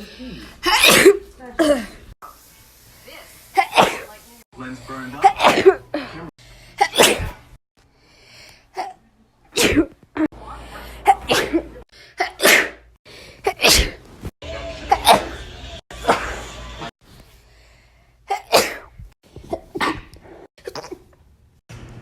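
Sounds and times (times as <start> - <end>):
person sneezing: 0.0 - 1.9, 5.2 - 5.8, 6.8 - 7.5, 8.8 - 10.0, 11.0 - 14.0, 16.0 - 16.4, 18.3 - 21.0.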